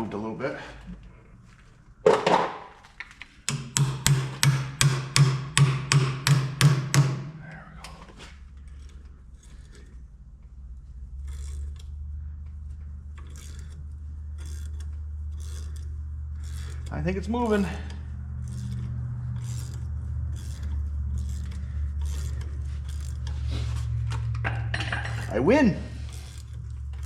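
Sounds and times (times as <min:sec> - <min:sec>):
low steady hum: 0:00.0 - 0:27.0
tool clicks and scrapes: 0:02.1 - 0:27.0
hammer striking metal: 0:03.5 - 0:07.4.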